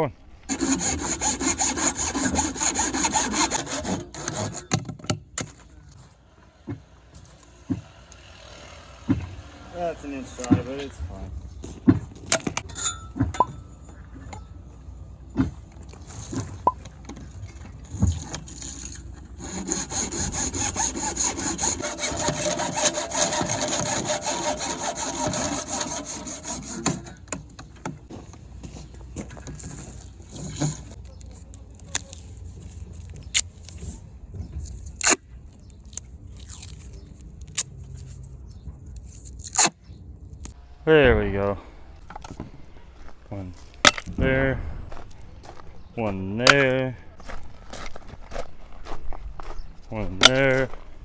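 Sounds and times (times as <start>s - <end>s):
saw cutting through pipe: 0.1s - 4.9s, 7.1s - 10.9s, 18.0s - 27.3s, 40.5s - 47.5s, 50.1s - 50.8s.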